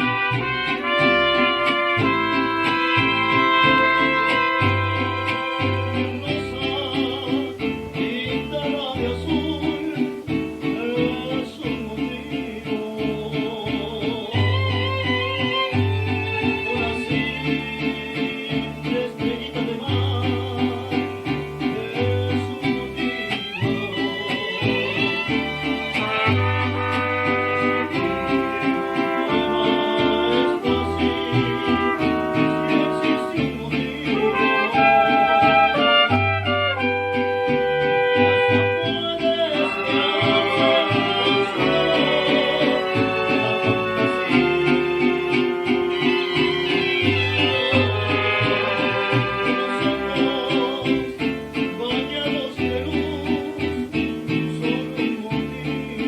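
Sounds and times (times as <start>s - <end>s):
mariachi band playing: 0.0s - 56.0s
plucked bass line: 0.0s - 56.0s
strummed guitars: 0.0s - 56.0s
violins holding chords: 0.0s - 56.0s.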